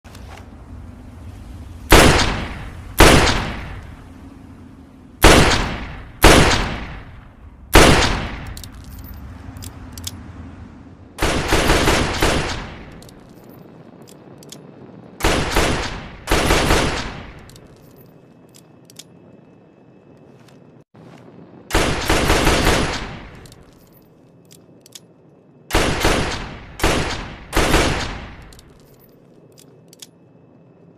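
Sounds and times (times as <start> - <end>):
faint clicks: 17.4 - 19.3.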